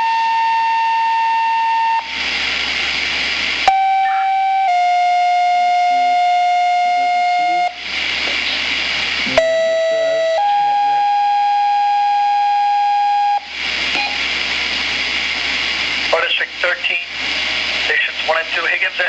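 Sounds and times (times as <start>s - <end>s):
buzzy pager tones: 3.7s - 7.7s
radio hiss: 7.5s - 9.5s, 13.6s - 19.0s.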